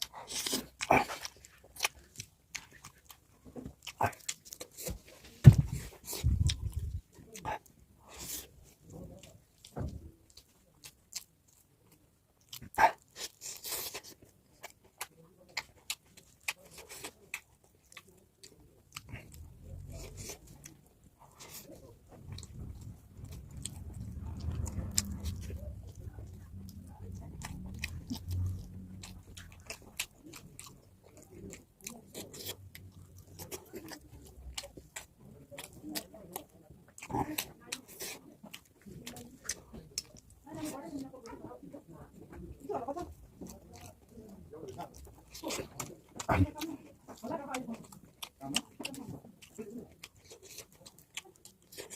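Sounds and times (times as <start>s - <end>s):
person chewing food: 0.0s - 51.9s
low rumble: 22.3s - 29.4s.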